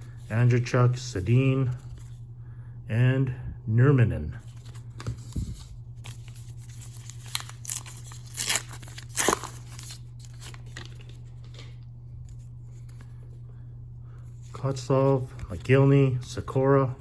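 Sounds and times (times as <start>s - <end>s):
steady low hum: 0.0s - 17.0s
wrapper ripping and crinkling: 6.1s - 11.7s.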